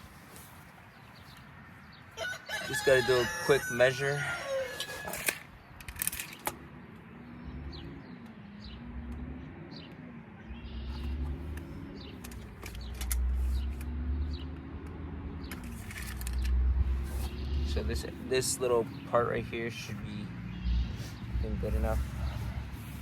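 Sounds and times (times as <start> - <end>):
birds chirping: 0.0 - 23.0
distant engine droning: 1.2 - 23.0
small clicks: 5.1 - 7.1, 10.9 - 14.0, 14.6 - 16.6
low rumbling: 6.6 - 23.0.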